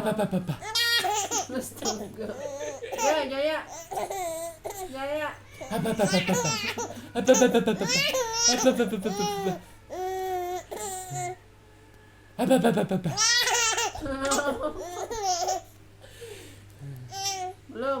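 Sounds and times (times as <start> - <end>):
baby laughing: 0.0 - 4.9, 5.5 - 11.4, 12.5 - 15.7, 17.1 - 17.5.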